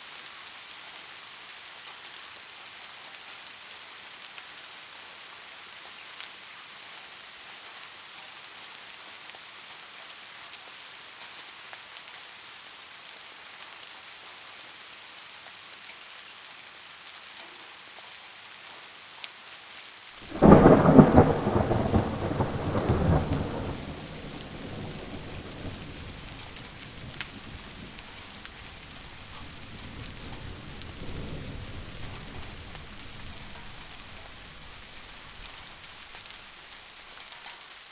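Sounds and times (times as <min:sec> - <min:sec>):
steady rain: 0:00.0 - 0:37.9
thunderclap rumbling: 0:20.3 - 0:36.2.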